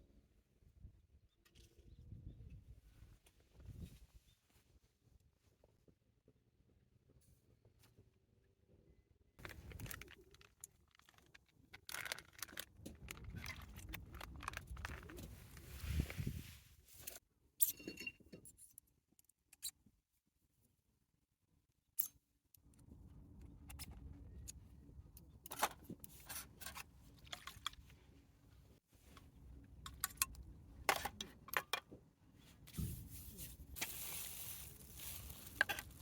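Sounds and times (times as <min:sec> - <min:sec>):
small hard objects clinking: 0:09.4 - 0:15.2, 0:33.3 - 0:36.0.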